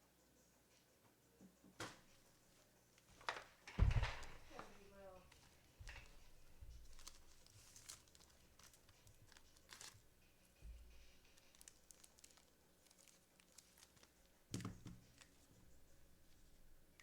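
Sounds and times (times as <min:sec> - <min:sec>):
rustling plastic packaging: 0:03.3 - 0:10.2, 0:10.9 - 0:15.6.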